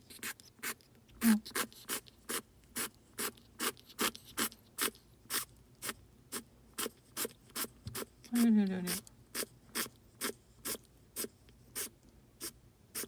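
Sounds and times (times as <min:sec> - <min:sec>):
ground squirrel sneezing: 0:00.2 - 0:08.1.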